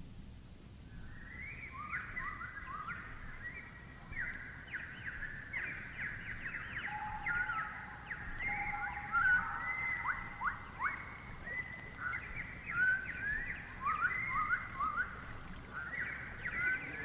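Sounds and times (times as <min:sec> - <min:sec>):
birds chirping and trilling: 0:05.5 - 0:17.0.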